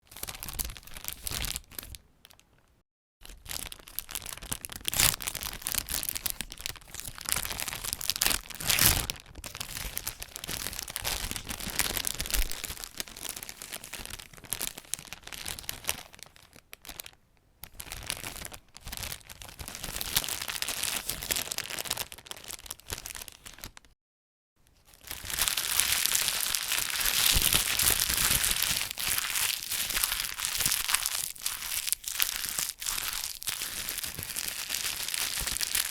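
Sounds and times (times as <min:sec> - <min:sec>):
packaging crinkling and tearing: 0:00.1 - 0:02.4, 0:03.2 - 0:23.9, 0:24.9 - 0:35.9
wrapper crumpling: 0:03.2 - 0:17.2, 0:17.8 - 0:23.9, 0:24.9 - 0:35.9.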